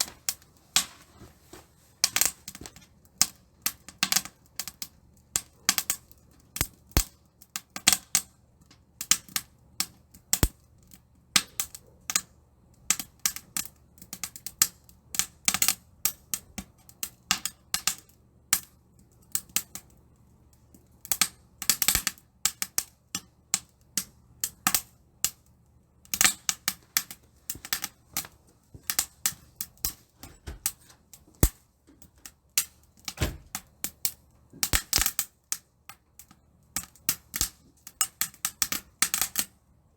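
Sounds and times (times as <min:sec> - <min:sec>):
wood fire crackling and popping: 0:00.0 - 0:39.9.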